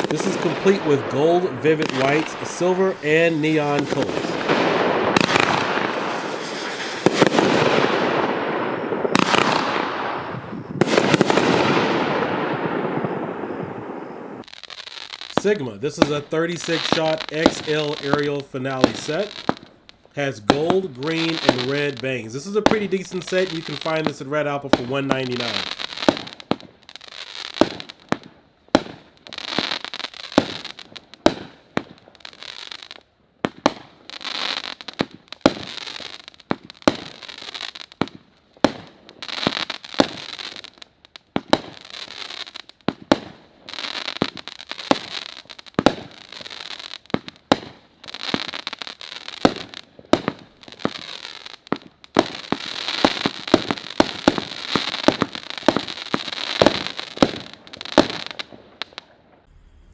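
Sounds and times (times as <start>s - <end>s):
fireworks bangs: 0.0s - 14.6s, 15.3s - 26.7s, 48.3s - 59.9s
fireworks hissing crackle: 0.0s - 28.2s, 28.8s - 32.9s, 34.1s - 59.9s.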